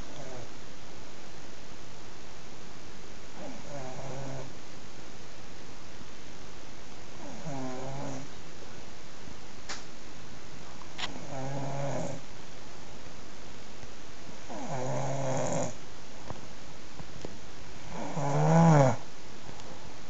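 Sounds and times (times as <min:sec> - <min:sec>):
person snoring: 0:00.0 - 0:00.5, 0:03.4 - 0:04.5, 0:07.2 - 0:08.3, 0:11.1 - 0:12.2, 0:14.5 - 0:15.8, 0:17.8 - 0:19.0.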